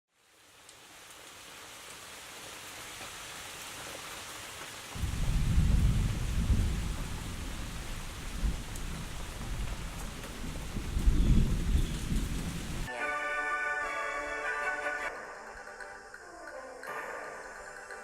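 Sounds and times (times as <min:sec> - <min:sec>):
steady rain hissing: 0:00.1 - 0:13.1, 0:13.7 - 0:18.0
thunder rumbling: 0:05.0 - 0:12.9.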